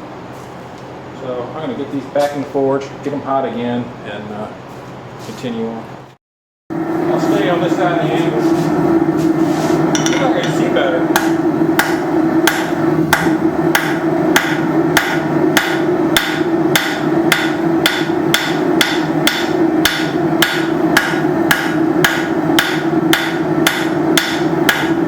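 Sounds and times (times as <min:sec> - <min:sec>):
steady hum: 0:00.0 - 0:25.0
hammer striking steel on anvil: 0:10.0 - 0:25.0.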